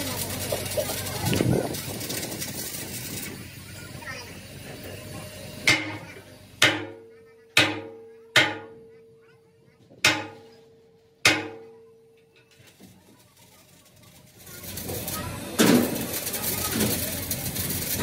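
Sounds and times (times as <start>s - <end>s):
hammer striking steel: 5.6s - 9.0s, 10.0s - 12.5s.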